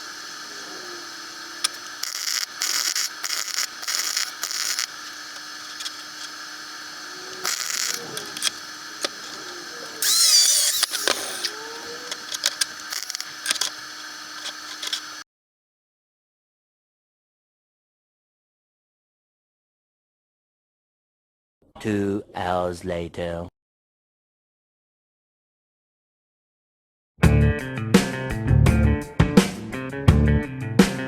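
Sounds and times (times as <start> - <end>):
steady hum: 0.0 - 15.2
metal parts scraping and rattling: 1.6 - 6.4, 7.3 - 15.2.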